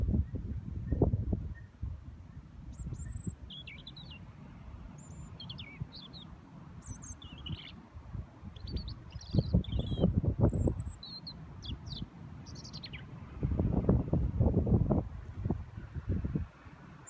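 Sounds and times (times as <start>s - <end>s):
wind rumbling on microphone: 0.0s - 6.2s, 6.8s - 17.0s
robin singing: 0.2s - 7.9s, 8.5s - 13.2s.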